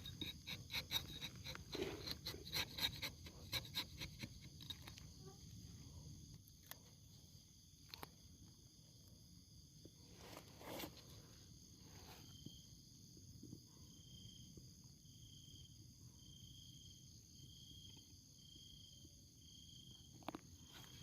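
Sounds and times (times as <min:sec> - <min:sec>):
insect chirping call: 0:00.0 - 0:21.0
insects trilling: 0:00.0 - 0:21.0.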